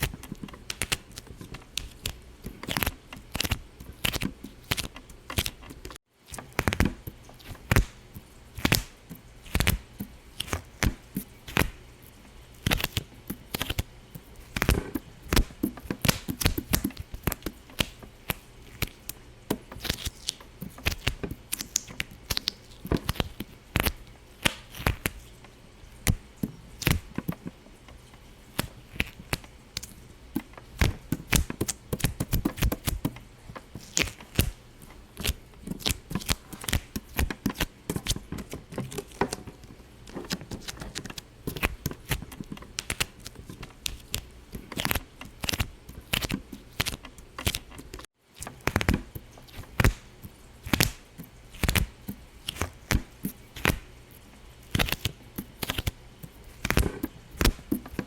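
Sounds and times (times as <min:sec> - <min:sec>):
crackle of small sharp pops: 0:14.5 - 0:25.2, 0:40.1 - 0:53.9.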